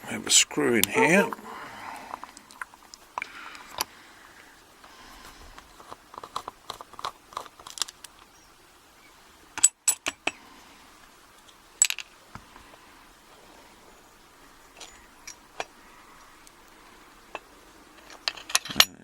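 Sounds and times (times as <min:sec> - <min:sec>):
metal clinks of padlock and tools: 0:18.0 - 0:19.0.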